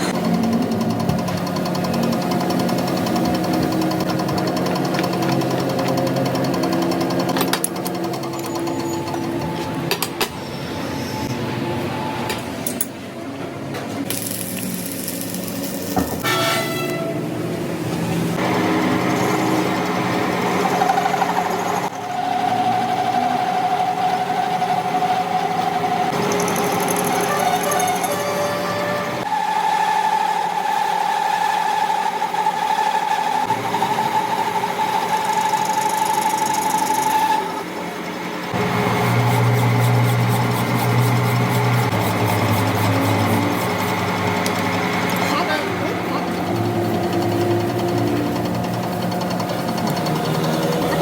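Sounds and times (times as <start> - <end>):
metal lathe motor hum: 29.3 - 51.0.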